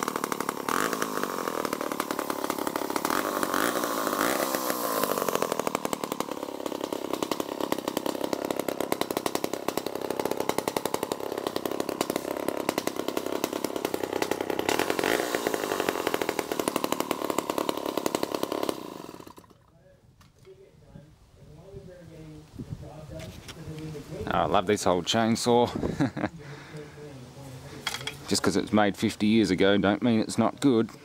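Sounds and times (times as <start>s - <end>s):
two-stroke chainsaw running: 0.0s - 19.8s.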